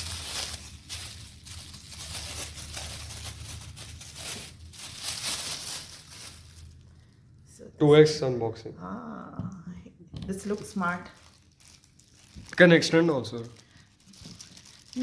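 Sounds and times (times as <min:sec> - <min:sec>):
packaging rustling and crinkling: 0:00.0 - 0:07.1, 0:10.4 - 0:15.0.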